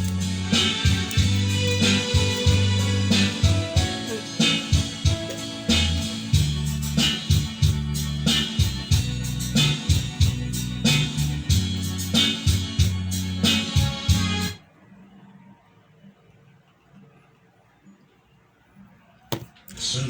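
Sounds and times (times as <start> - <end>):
music with bass and drums: 0.0 - 14.6.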